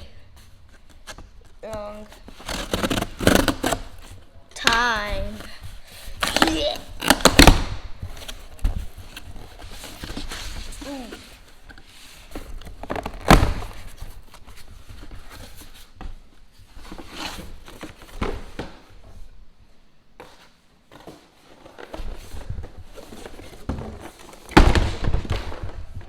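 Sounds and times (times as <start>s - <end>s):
cardboard package thuds: 24.5s - 26.0s.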